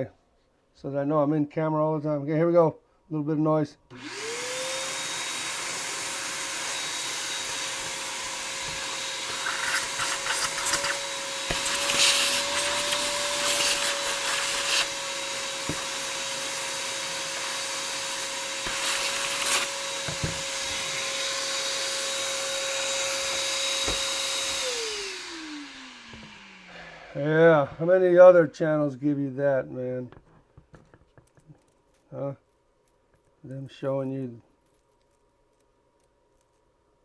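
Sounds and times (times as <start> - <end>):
vacuum cleaner running: 3.9 - 28.1.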